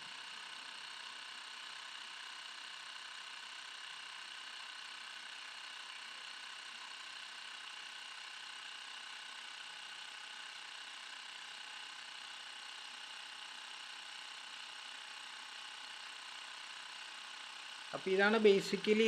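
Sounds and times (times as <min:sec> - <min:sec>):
air compressor whining: 0:17.1 - 0:19.0.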